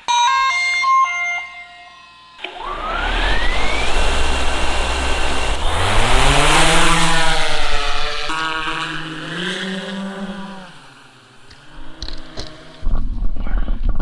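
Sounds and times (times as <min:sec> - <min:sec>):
drone propellers whining: 0:02.4 - 0:13.0.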